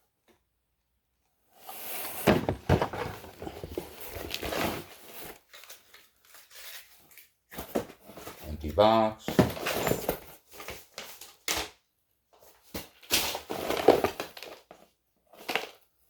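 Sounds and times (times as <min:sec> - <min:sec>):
rummaging through small parts: 0:02.2 - 0:11.5.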